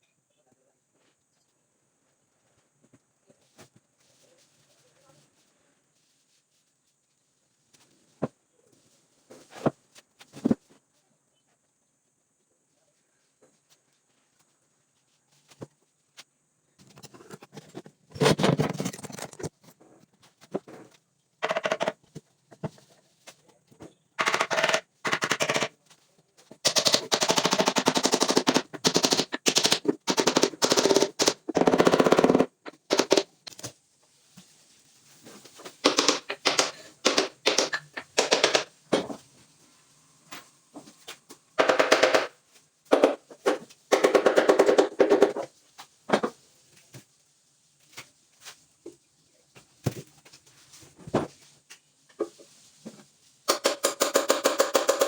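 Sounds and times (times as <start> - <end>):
power tool driving fasteners: 26.6 - 33.6, 35.8 - 38.7.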